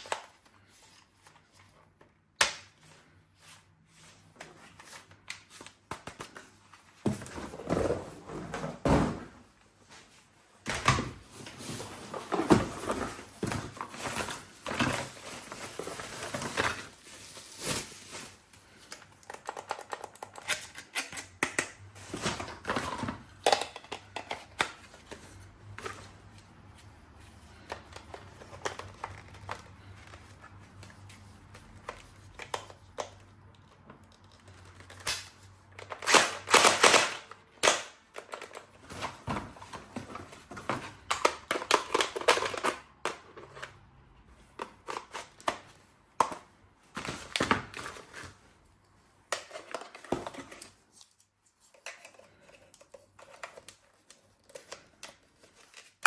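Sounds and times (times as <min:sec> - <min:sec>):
packaging rustling: 0:11.1 - 0:20.0.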